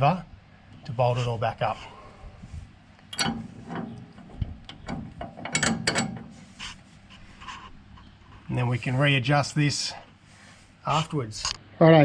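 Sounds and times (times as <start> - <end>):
hand tools clicking and ratcheting: 3.1 - 6.3.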